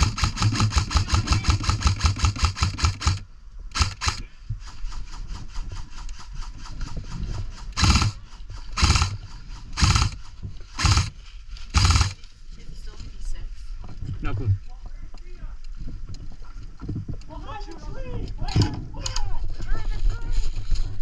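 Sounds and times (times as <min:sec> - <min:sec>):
airsoft gun firing: 0:00.0 - 0:04.3, 0:07.8 - 0:09.2, 0:09.8 - 0:12.2.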